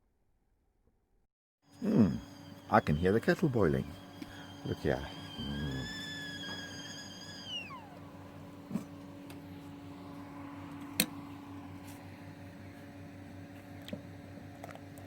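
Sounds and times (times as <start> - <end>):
kettle whistling: 1.7 - 11.2
steady low hum: 1.8 - 15.0.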